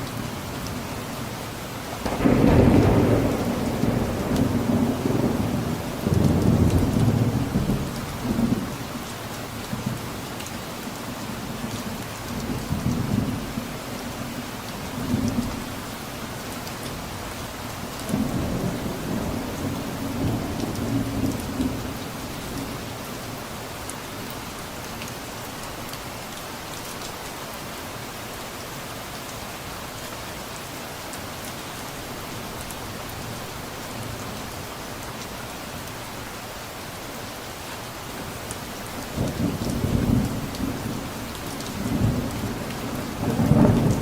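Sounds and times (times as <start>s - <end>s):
steady rain: 0.0s - 44.0s
distant thunder rumbling: 2.0s - 8.7s, 39.1s - 44.0s.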